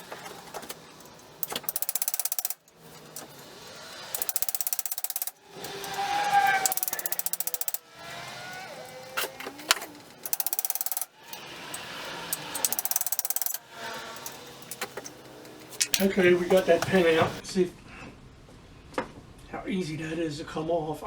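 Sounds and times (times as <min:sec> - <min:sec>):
rapid ratcheting clicks: 0:01.0 - 0:03.2, 0:04.1 - 0:09.0, 0:09.6 - 0:16.1
metal squeaks and scraping: 0:05.6 - 0:07.1, 0:08.0 - 0:10.2.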